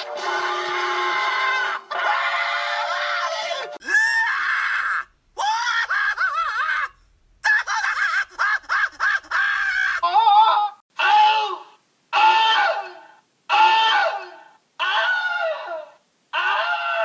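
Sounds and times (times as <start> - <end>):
person screaming: 1.2 - 6.9, 9.2 - 17.0.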